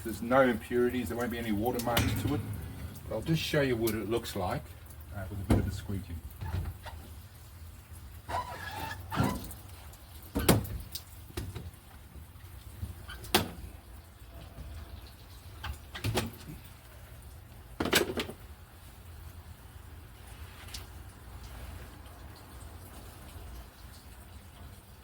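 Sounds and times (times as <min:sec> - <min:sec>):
sharp knocks: 0:01.9 - 0:04.0
squeegee on wet window: 0:08.2 - 0:11.8.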